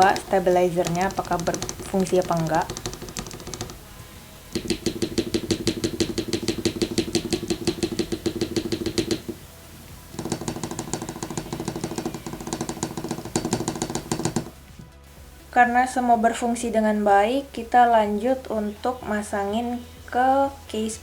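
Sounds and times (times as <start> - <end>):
keyboard stabilizers clicking: 0.0 - 3.8.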